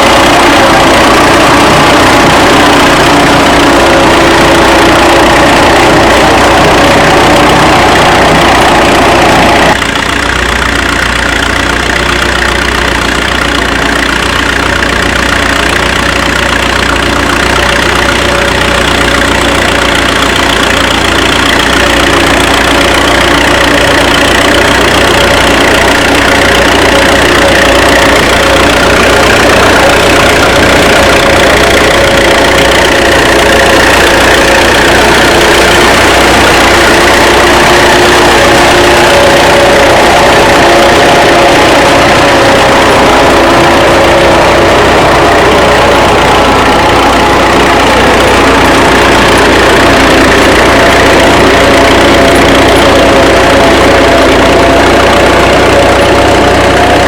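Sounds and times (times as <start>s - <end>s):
tractor engine running loudly: 0.0s - 57.0s.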